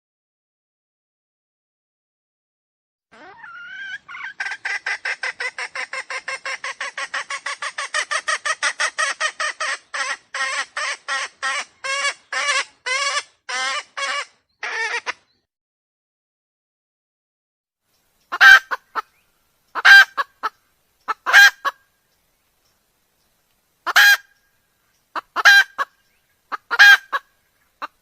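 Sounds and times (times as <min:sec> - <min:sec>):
junglefowl calling: 0:03.2 - 0:15.3, 0:18.3 - 0:21.9, 0:23.8 - 0:24.5, 0:25.1 - 0:28.0.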